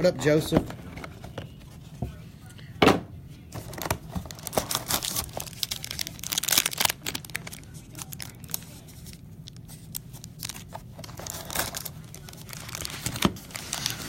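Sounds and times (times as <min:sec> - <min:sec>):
plastic packaging crinkling: 0:03.6 - 0:14.0.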